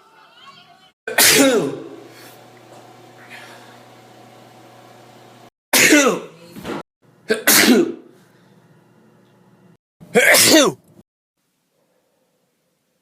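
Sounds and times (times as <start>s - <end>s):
man sneezing: 1.1s - 2.0s, 5.8s - 6.4s, 7.3s - 8.1s, 10.1s - 10.8s.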